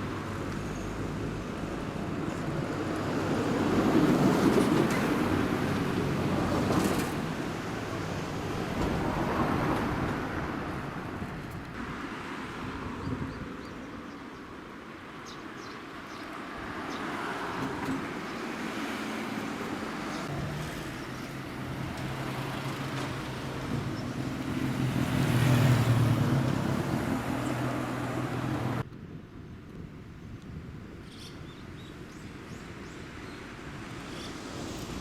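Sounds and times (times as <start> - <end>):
road noise: 0.0 - 35.0
vehicle engine approaching: 20.3 - 28.8.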